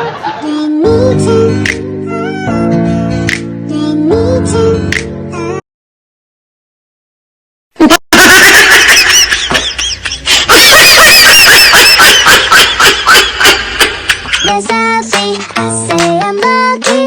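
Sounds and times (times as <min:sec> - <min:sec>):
high-pitched laughter: 0:07.8 - 0:14.6.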